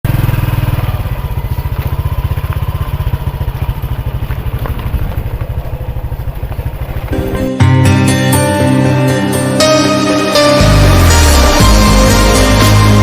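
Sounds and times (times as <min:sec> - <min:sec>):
engine running with low throb: 0:00.0 - 0:13.0.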